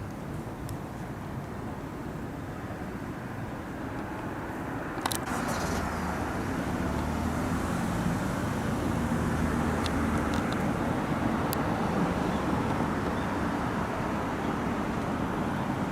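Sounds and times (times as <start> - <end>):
low outdoor rumble: 5.2 - 13.0.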